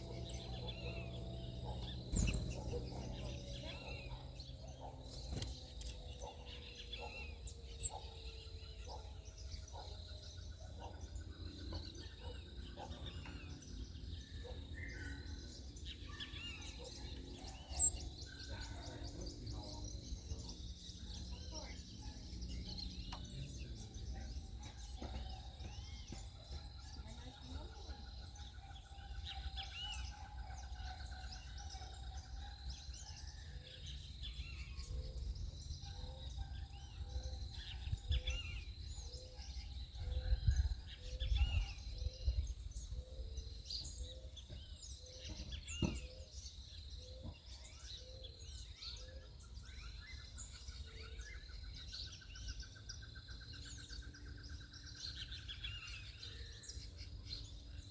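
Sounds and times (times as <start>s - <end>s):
buzzy bird trill: 0.0s - 8.0s
birds chirping and calling: 0.0s - 57.9s.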